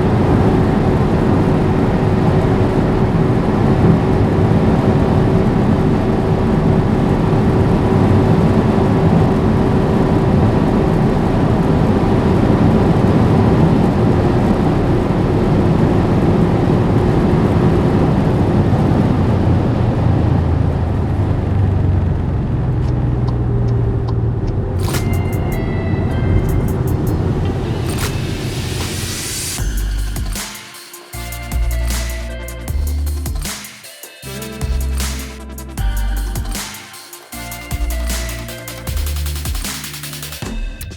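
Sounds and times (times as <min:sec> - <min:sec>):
car engine drone: 0:00.0 - 0:30.5, 0:34.2 - 0:36.7
wind rush: 0:24.7 - 0:30.5.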